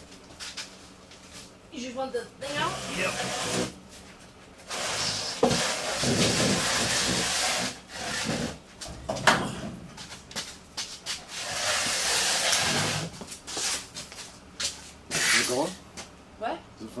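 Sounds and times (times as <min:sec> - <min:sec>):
box scraping across floor: 0:02.5 - 0:03.8, 0:04.7 - 0:08.6, 0:11.2 - 0:13.9.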